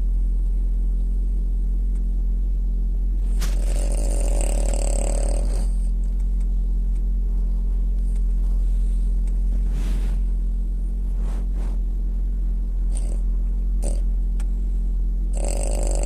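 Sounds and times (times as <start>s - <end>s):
steady low hum: 0.0s - 16.0s
dog snoring: 3.2s - 6.0s, 12.8s - 14.2s, 15.3s - 16.0s.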